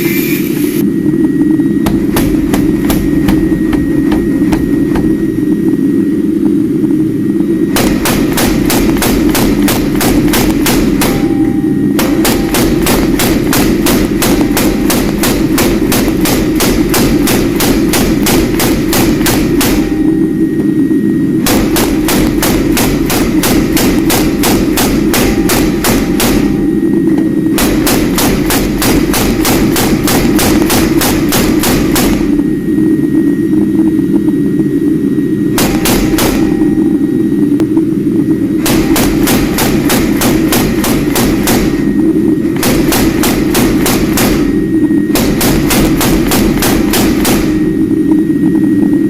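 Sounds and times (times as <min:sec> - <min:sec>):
forge roaring: 0:00.0 - 0:49.0
hammer striking metal: 0:01.8 - 0:05.3, 0:07.7 - 0:20.2, 0:21.4 - 0:26.8, 0:35.6 - 0:36.8.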